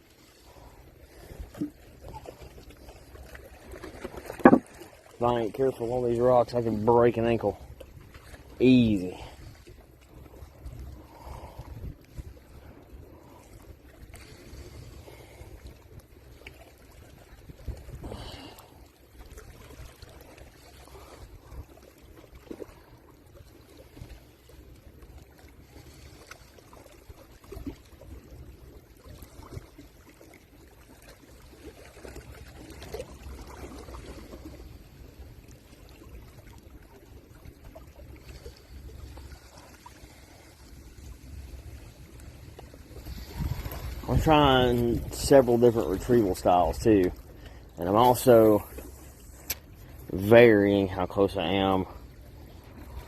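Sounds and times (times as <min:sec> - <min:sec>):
water lapping against rocks: 0:00.0 - 0:53.0
wind on microphone: 0:41.4 - 0:47.0.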